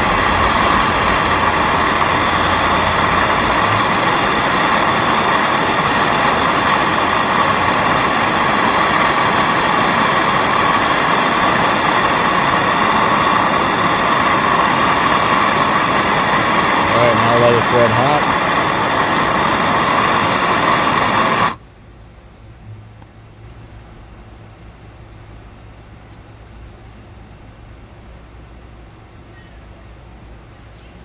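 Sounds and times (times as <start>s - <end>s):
low rumble: 0.0s - 5.2s
gas torch flame hissing: 0.0s - 21.6s.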